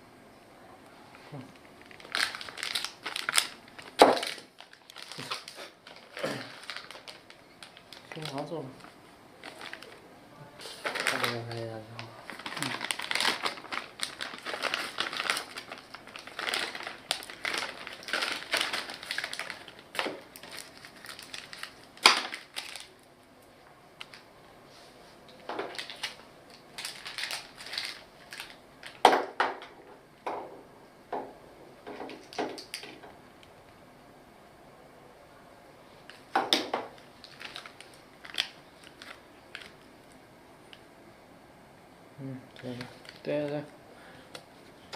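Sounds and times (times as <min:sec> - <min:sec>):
plastic packaging crinkling: 0:01.6 - 0:10.0, 0:10.6 - 0:23.1, 0:24.0 - 0:24.3, 0:25.3 - 0:29.6, 0:31.9 - 0:33.1, 0:36.0 - 0:40.2, 0:42.6 - 0:43.7.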